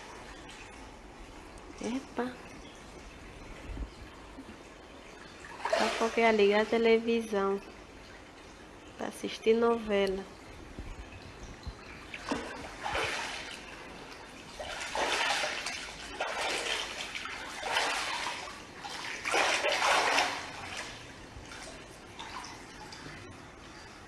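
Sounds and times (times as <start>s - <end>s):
water splashing and rushing: 12.1s - 22.9s.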